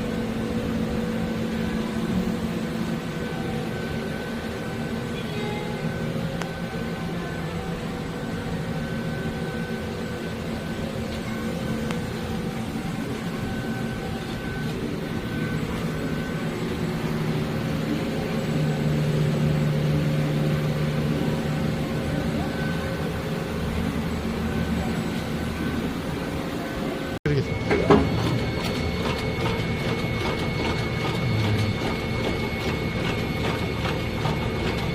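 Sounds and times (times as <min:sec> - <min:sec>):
lathe machine hum: 0:00.0 - 0:34.9
low hum: 0:27.4 - 0:34.9.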